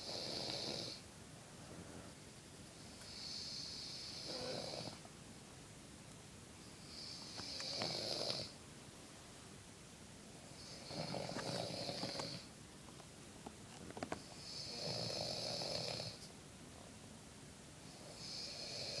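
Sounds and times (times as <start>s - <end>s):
woman snoring: 0.0s - 1.0s, 3.1s - 5.0s, 6.9s - 8.6s, 10.5s - 12.5s, 14.4s - 16.2s, 17.9s - 19.0s.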